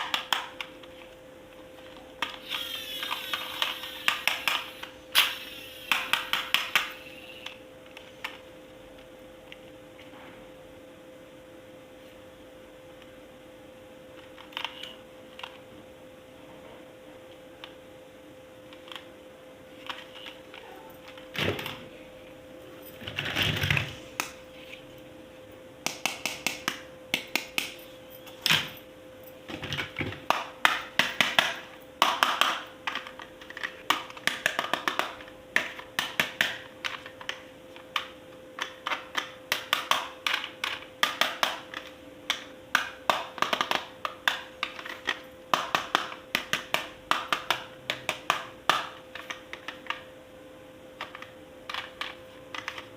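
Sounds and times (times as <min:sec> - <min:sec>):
faint steady hum: 0:00.0 - 0:52.9
plastic toy parts clicking: 0:01.8 - 0:08.4, 0:51.0 - 0:52.9.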